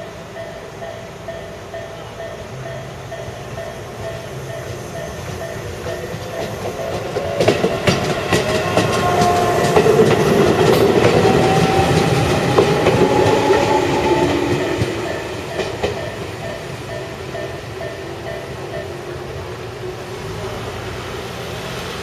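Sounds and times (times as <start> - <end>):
level crossing warning bell: 0.0 - 19.8
train wheels clacking over rail joints: 2.6 - 19.3.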